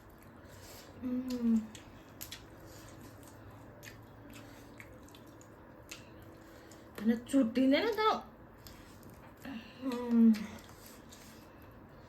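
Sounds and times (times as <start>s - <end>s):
person chewing food: 0.0s - 7.0s, 8.4s - 12.0s.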